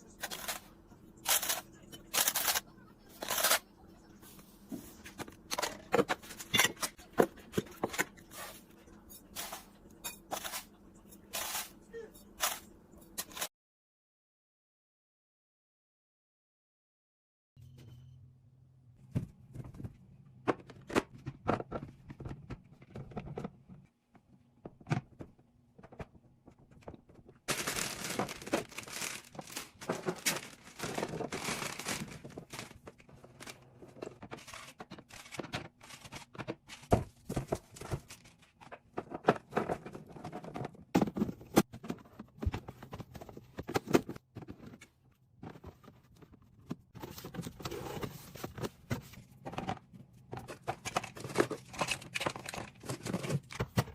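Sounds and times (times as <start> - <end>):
plastic crinkling and tearing: 27.5 - 32.8
containers being set down: 27.5 - 33.0.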